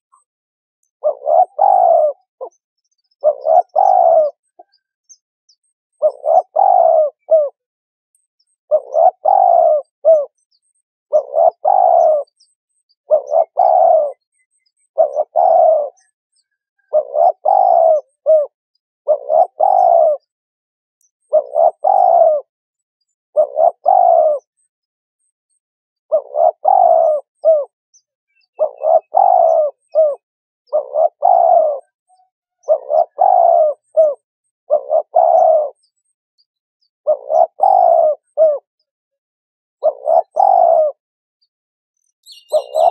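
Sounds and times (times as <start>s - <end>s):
dove cooing: 1.0s - 2.6s, 3.2s - 4.8s, 6.0s - 7.6s, 8.7s - 10.4s, 11.1s - 12.4s, 13.0s - 20.3s, 21.3s - 22.5s, 23.4s - 24.6s, 26.1s - 27.8s, 28.4s - 35.8s, 37.1s - 38.7s, 39.8s - 41.0s, 42.3s - 42.9s.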